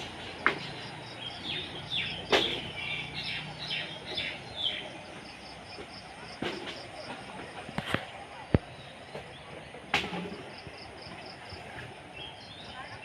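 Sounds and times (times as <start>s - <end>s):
bird chirping: 0.0s - 5.8s.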